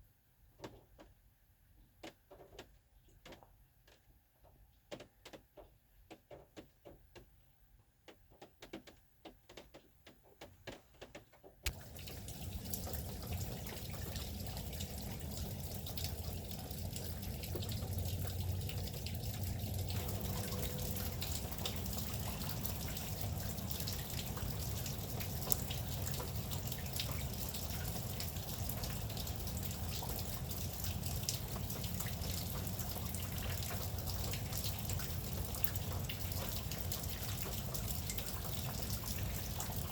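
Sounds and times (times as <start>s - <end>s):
raindrops dripping: 8.1s - 39.9s
rushing falling rain: 11.7s - 39.9s.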